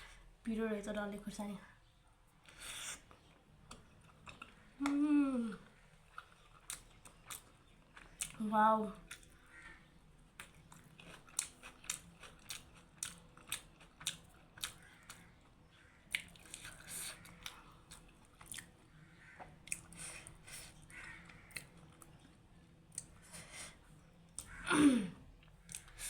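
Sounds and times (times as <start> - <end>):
person chewing with mouth clicks: 10.4 - 15.2, 19.6 - 23.2, 25.4 - 26.0.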